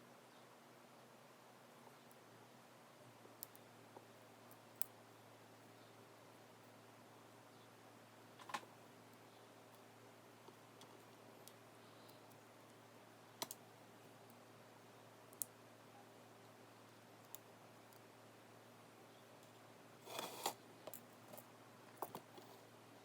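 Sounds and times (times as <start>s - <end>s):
rustling: 20.0s - 20.6s.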